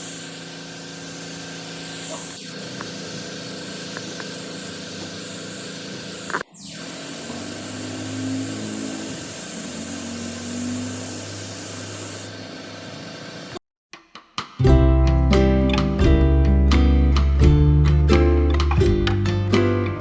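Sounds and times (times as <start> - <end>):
air spraying hiss: 0.0 - 13.6.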